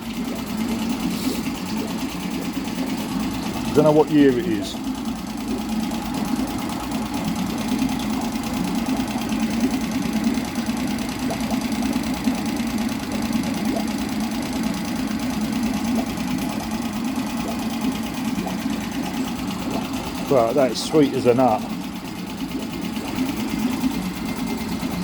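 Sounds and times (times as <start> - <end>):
outboard motor running: 0.0 - 25.0.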